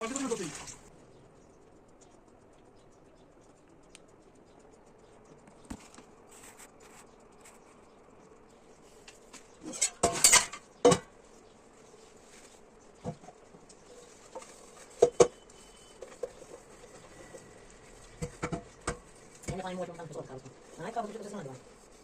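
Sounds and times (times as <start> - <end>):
dishes and cutlery clinking: 9.6 - 11.1.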